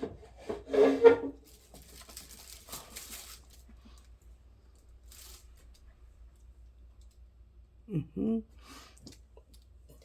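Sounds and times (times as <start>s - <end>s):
paper rustling and crinkling: 1.4s - 4.2s, 5.0s - 5.9s.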